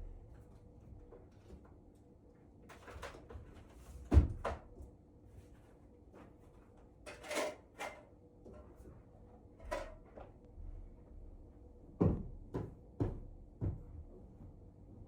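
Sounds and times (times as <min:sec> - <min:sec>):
drawer or cupboard clatter: 0:07.1 - 0:08.0.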